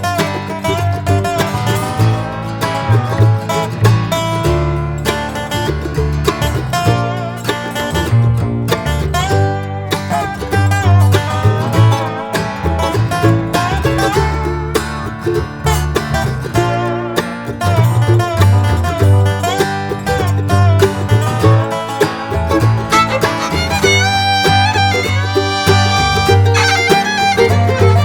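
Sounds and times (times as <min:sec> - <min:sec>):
bass line: 0:00.0 - 0:28.0
guitar and banjo music: 0:00.0 - 0:28.0.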